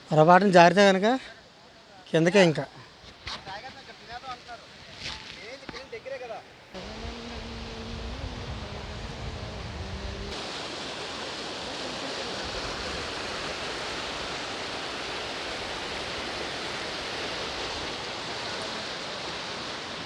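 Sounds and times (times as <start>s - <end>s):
low rumble: 6.8s - 10.4s
waterfall rushing: 6.8s - 20.0s.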